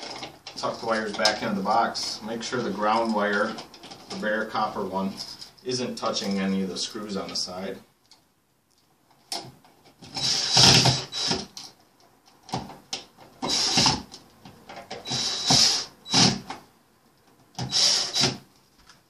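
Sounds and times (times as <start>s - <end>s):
cordless screwdriver whining: 10.1s - 11.5s, 15.0s - 16.4s, 17.6s - 18.4s.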